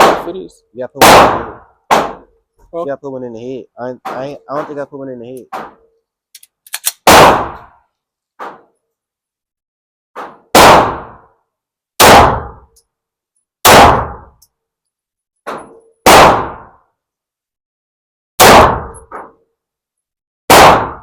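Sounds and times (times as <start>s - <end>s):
loud pistol shots: 0.0s - 0.4s, 1.0s - 2.3s, 7.0s - 7.7s, 10.5s - 11.2s, 12.0s - 12.7s, 13.6s - 14.3s, 16.0s - 16.8s, 18.4s - 19.2s, 20.5s - 21.0s
fainter gunshots: 1.0s - 2.2s, 7.0s - 7.7s, 10.5s - 11.2s, 12.0s - 12.6s, 13.6s - 14.2s, 16.1s - 16.7s, 18.4s - 19.0s, 20.5s - 21.0s.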